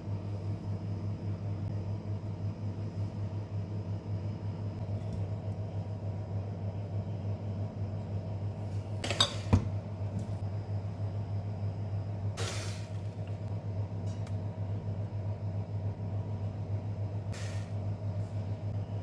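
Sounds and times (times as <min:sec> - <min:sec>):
steady low hum: 0:00.0 - 0:19.0
kitchenware clinking: 0:09.0 - 0:09.6.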